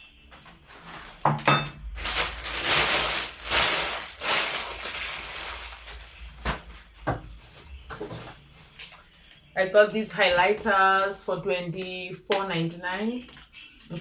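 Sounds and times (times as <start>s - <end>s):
packaging crinkling and rustling: 0.3s - 9.5s, 13.2s - 14.0s.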